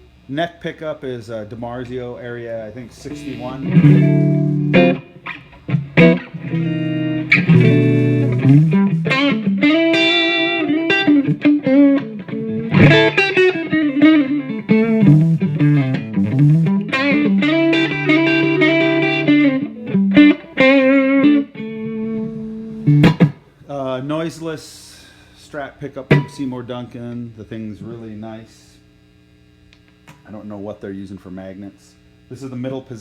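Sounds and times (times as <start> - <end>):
electric guitar lead lines: 1.8 - 24.5, 25.8 - 28.5
electric guitar chords: 2.9 - 23.6, 26.1 - 26.5.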